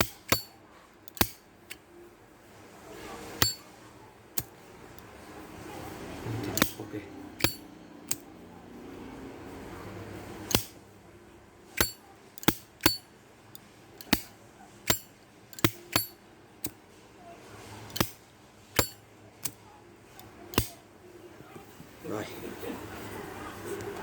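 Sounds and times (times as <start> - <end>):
lighter lid clicking open and shut: 0.0 - 0.5, 1.1 - 1.8, 6.4 - 6.8, 7.4 - 8.2, 10.5 - 10.8, 11.8 - 13.0, 14.0 - 14.3, 14.9 - 16.8, 17.9 - 18.2.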